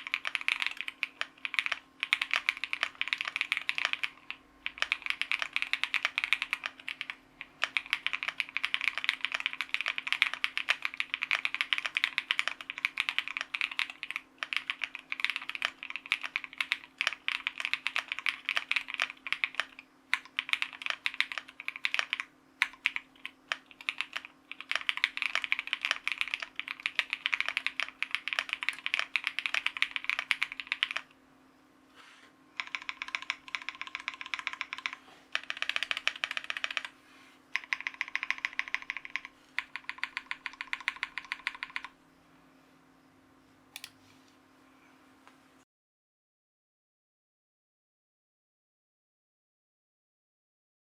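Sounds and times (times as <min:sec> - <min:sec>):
fast mechanical keyboard typing: 0:00.0 - 0:31.1, 0:32.6 - 0:36.9, 0:37.5 - 0:42.0.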